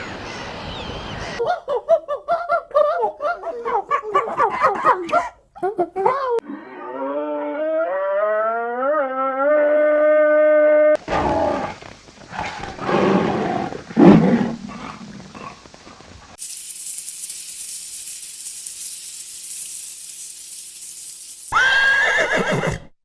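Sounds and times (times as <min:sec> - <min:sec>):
high hiss: 0:11.0 - 0:22.6
big cat growling roars: 0:11.1 - 0:16.0
animal call: 0:21.5 - 0:22.9.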